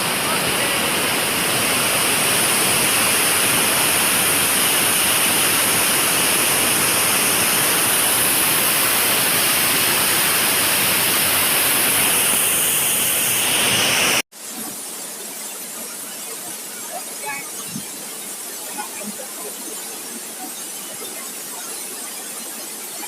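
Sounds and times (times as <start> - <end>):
waterfall roaring: 0.0 - 14.2.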